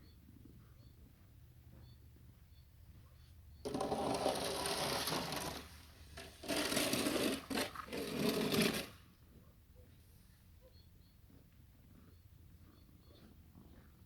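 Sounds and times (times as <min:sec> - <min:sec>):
shovel scraping snow: 0:03.7 - 0:09.0.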